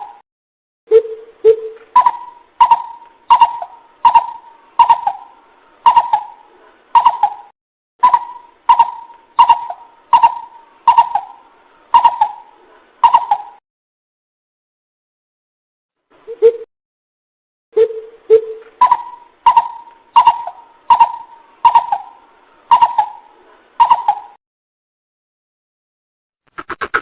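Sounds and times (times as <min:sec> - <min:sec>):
coucal bird call: 0:00.9 - 0:06.4, 0:07.0 - 0:13.6, 0:17.8 - 0:24.4.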